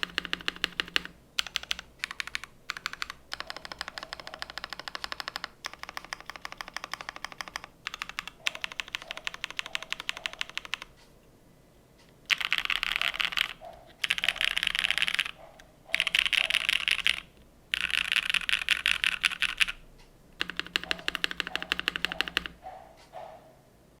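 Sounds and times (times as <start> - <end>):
clacky mechanical keyboard typing: 0.0 - 11.0, 12.3 - 19.8, 20.4 - 22.6.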